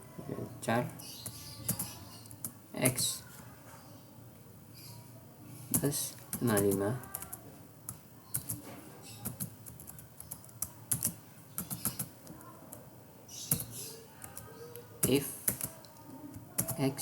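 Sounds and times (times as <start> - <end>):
typing on computer keyboard: 6.3 - 8.6, 9.2 - 12.5, 13.5 - 16.8.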